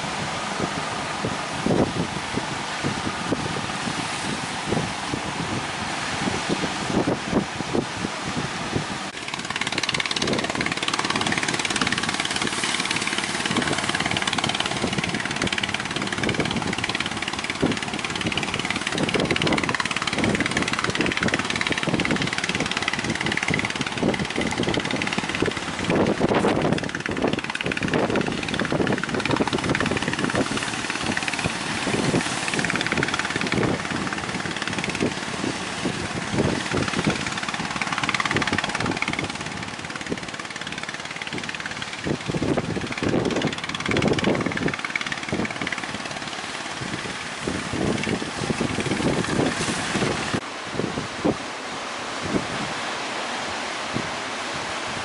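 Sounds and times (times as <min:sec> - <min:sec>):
strong wind buffeting microphone: 0:00.0 - 0:55.0.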